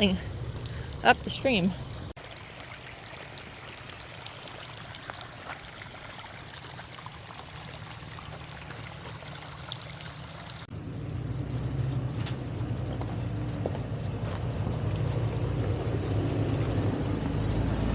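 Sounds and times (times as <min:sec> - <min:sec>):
stream water rushing and splashing: 0:00.0 - 0:10.7
car engine rumble: 0:07.9 - 0:17.9.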